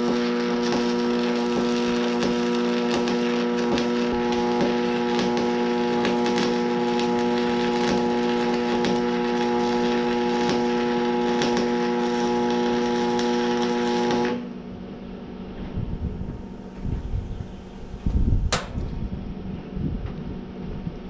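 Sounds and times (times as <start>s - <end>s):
welding arc crackling: 0.0s - 14.6s
welding electrical buzz: 0.0s - 14.8s.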